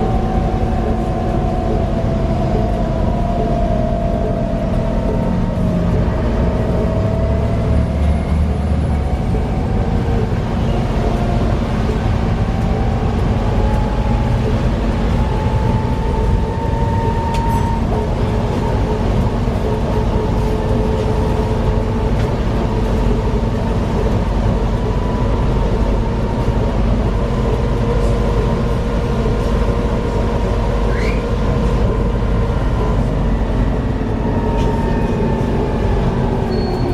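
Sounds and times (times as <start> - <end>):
bus diesel engine rumble: 0.0 - 36.9.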